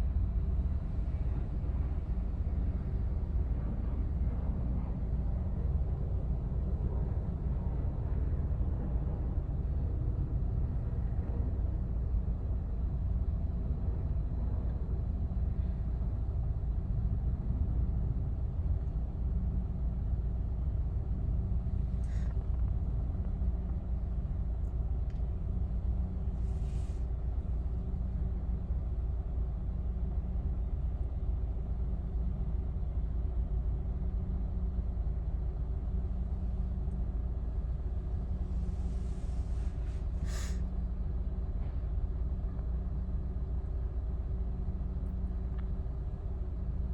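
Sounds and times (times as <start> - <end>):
faint steady hum: 0.0 - 46.9
jet engines rumbling: 37.2 - 41.7
short hisses: 40.2 - 40.6.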